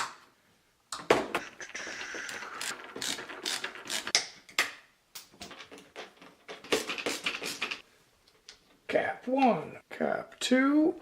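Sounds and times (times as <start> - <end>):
screwdriver clicking and rattling: 2.6 - 7.8.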